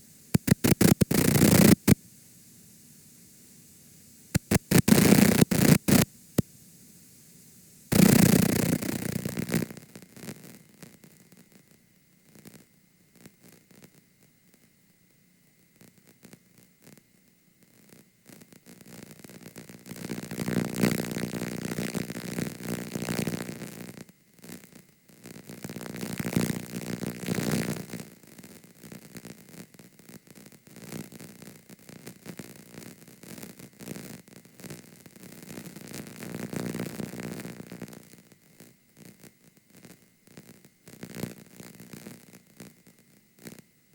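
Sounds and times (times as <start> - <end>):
thin steady whine: 0.0 - 31.7
static hiss and crackle: 0.0 - 43.9.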